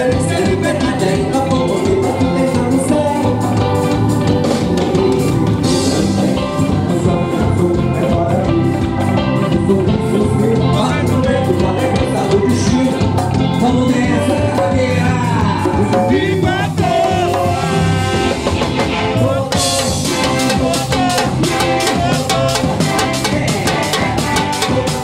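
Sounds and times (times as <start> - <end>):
live band music: 0.0 - 25.0
rapid drum strokes: 15.1 - 25.0.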